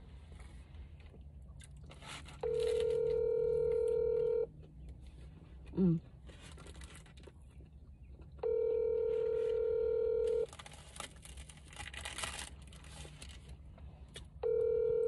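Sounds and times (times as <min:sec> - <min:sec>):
telephone ringback tone: 0:02.4 - 0:04.5, 0:08.4 - 0:10.5, 0:14.4 - 0:15.0.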